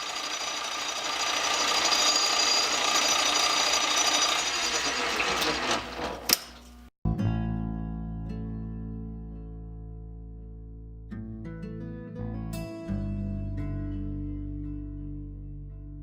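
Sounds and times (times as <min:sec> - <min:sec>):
power tool high whine: 0:00.0 - 0:06.0
guitar music: 0:07.1 - 0:16.0.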